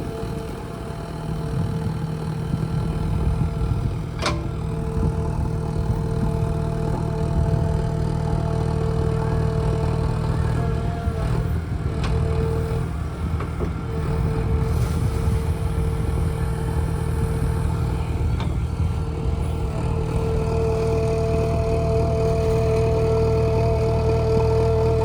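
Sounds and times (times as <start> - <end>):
diesel engine under load: 0.0 - 25.0
steady whine: 0.0 - 25.0.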